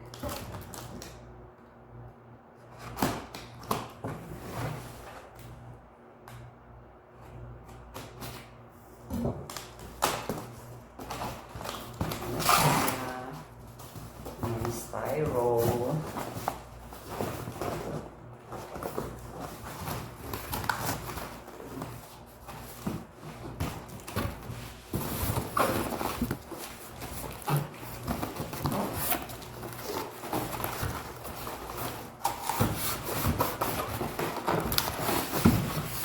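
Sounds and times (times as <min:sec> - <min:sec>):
packing being handled: 0:09.5 - 0:36.0.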